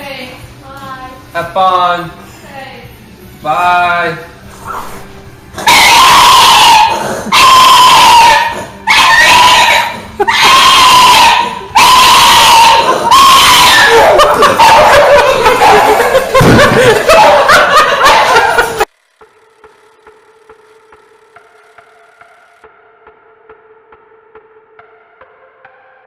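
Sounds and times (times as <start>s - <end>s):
dog howling: 5.6s - 16.3s.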